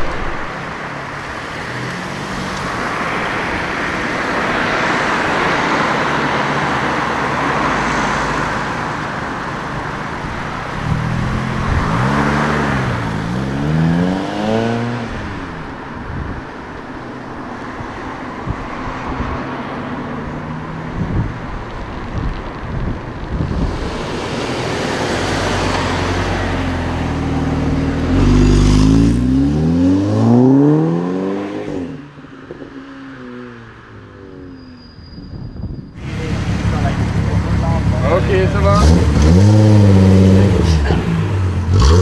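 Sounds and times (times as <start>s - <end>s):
passing traffic: 0.0s - 42.0s
car engine revving: 10.1s - 15.7s, 23.3s - 34.5s, 36.0s - 42.0s
engine running low: 36.0s - 42.0s.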